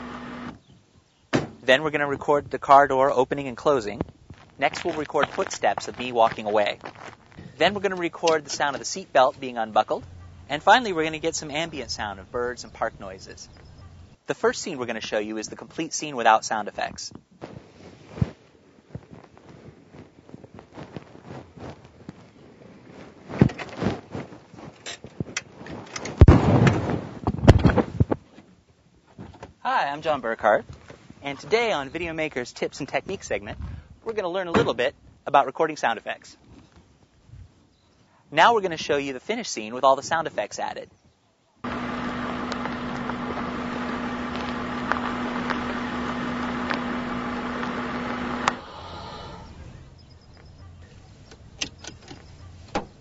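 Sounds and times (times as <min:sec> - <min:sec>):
car engine hum: 0:00.0 - 0:00.5, 0:10.0 - 0:14.2, 0:41.6 - 0:50.1
tyres crunching on gravel: 0:03.3 - 0:14.2, 0:41.6 - 0:51.2
stones popping: 0:04.3 - 0:07.4
car door shutting: 0:51.6 - 0:53.0.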